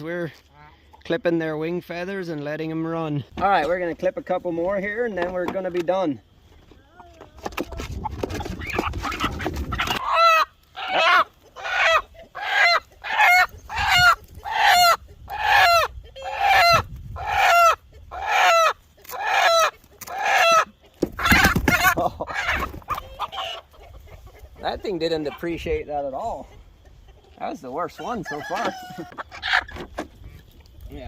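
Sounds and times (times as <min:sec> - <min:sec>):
chicken squawking: 0:07.7 - 0:25.6, 0:26.3 - 0:30.4.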